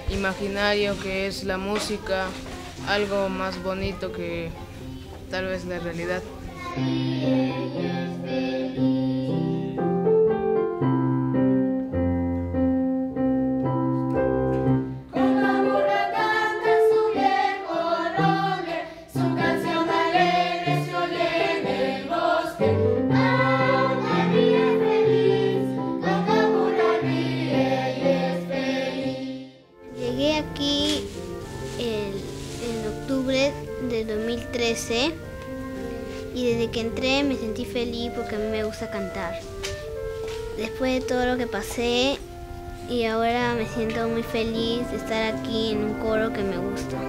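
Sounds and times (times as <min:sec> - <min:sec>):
instrumental accompaniment: 0:00.0 - 0:47.0
choir singing: 0:06.6 - 0:09.7, 0:15.1 - 0:30.2.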